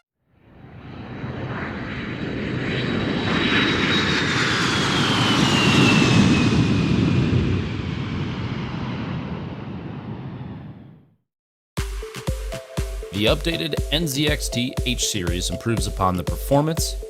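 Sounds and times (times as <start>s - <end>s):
aircraft flying past: 0.4s - 11.1s.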